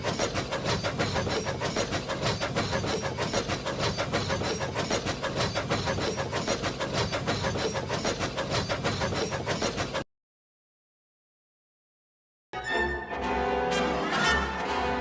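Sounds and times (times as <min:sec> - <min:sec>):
steam locomotive chuffing: 0:00.0 - 0:10.0.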